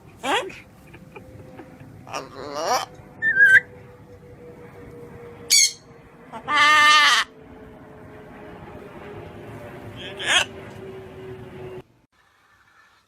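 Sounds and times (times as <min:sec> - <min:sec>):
parrot squawking: 0:02.1 - 0:03.7, 0:05.5 - 0:07.3, 0:10.0 - 0:10.6
parrot whistle: 0:03.2 - 0:03.7, 0:05.5 - 0:05.8.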